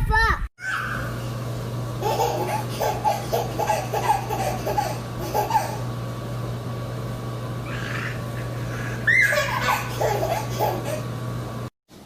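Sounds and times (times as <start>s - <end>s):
steady low hum: 0.0s - 12.0s
baby laughing and babbling: 2.0s - 5.8s, 7.7s - 11.1s.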